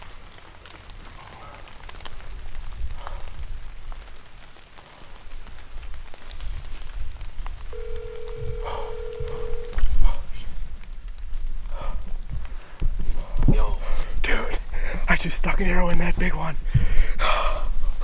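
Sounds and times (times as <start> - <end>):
rain pattering: 0.0 - 18.0
phone ringback tone: 7.8 - 9.8.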